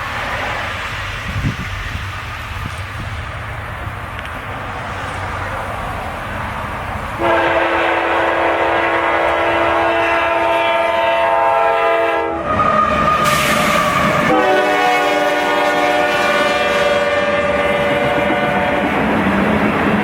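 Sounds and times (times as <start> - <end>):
rushing train noise: 0.0 - 20.0
train horn: 7.2 - 19.1.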